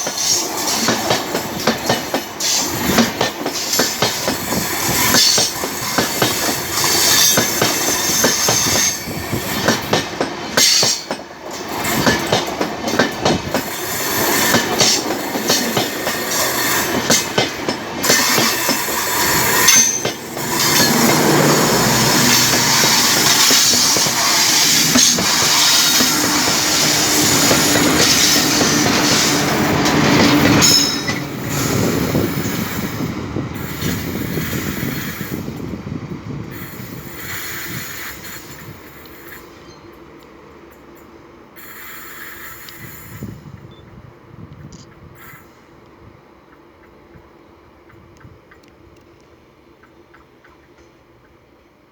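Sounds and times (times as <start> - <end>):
train wheels clattering over rail joints: 0.0 - 35.8.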